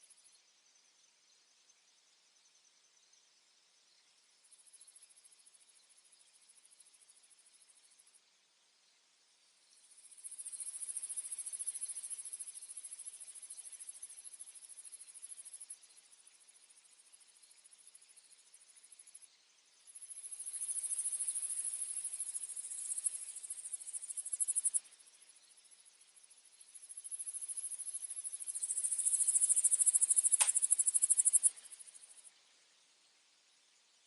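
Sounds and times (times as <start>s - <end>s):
insect trilling: 20.0s - 24.9s, 26.8s - 32.3s
sharp click: 30.2s - 30.9s.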